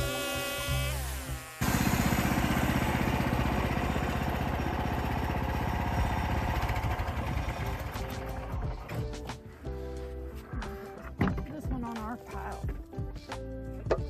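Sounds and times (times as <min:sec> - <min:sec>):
engine running: 0:00.0 - 0:09.1.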